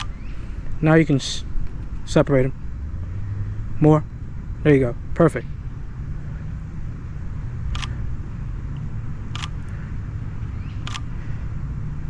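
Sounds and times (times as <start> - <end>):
steady low rumble: 0.0 - 12.0
camera shutter firing: 7.7 - 8.0, 9.3 - 9.6, 10.8 - 11.1.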